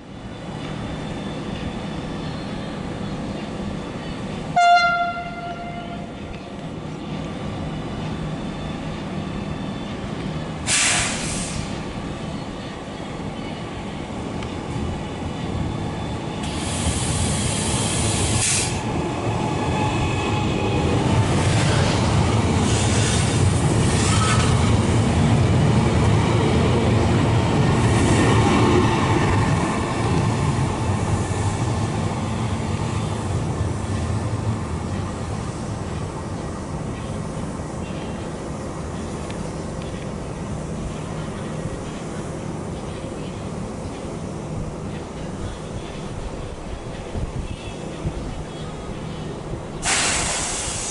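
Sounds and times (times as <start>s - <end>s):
train rumbling: 0.0s - 50.9s
brake air hiss: 10.6s - 11.9s, 16.4s - 18.9s, 22.6s - 24.5s, 49.8s - 50.9s.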